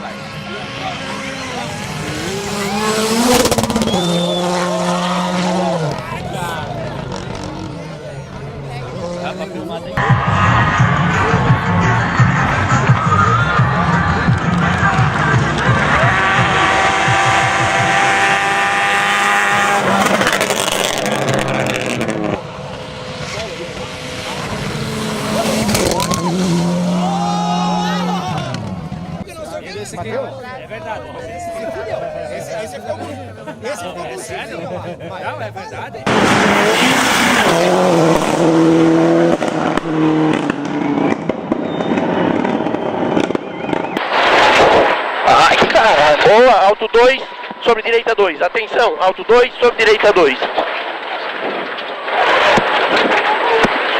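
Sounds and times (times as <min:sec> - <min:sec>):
rally car engine revving: 0:00.0 - 0:29.4, 0:36.0 - 0:53.9
exhaust cracks and pops: 0:39.3 - 0:46.3, 0:50.2 - 0:53.9
tyres on gravel: 0:49.9 - 0:53.9.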